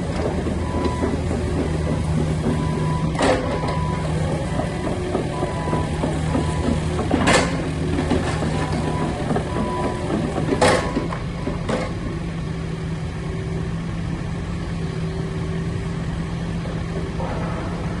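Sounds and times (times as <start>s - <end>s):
excavator diesel engine running: 0.0s - 18.0s
sharp metallic knocks: 0.1s - 12.2s.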